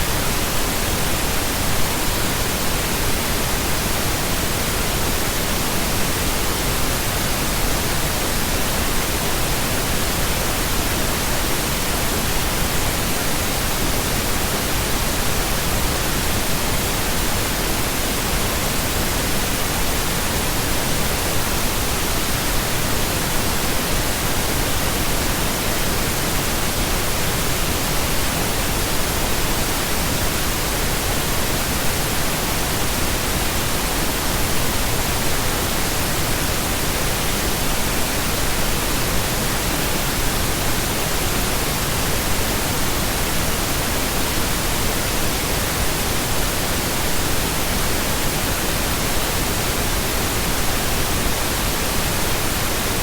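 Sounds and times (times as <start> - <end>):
steady pink noise hiss: 0.0 - 53.0.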